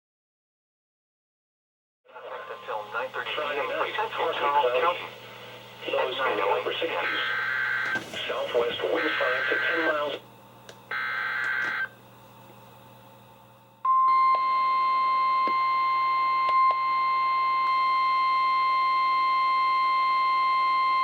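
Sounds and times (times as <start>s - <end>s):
steady alarm tone: 6.0s - 10.1s, 10.9s - 12.0s.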